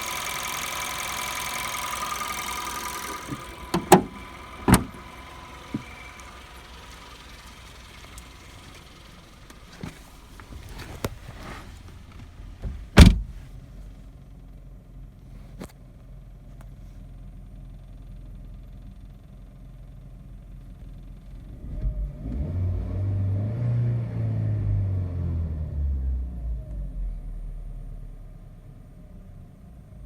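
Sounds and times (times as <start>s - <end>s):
heavy thump: 3.0s - 5.1s, 5.7s - 6.1s, 12.2s - 13.5s
sharp knocks: 3.2s - 5.0s.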